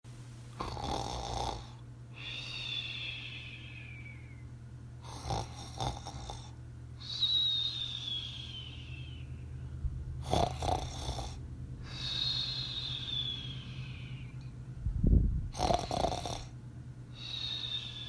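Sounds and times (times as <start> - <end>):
rough snore: 0.6 - 1.7, 5.1 - 6.5, 10.2 - 11.4, 15.6 - 16.5
falling whistle: 7.0 - 9.3.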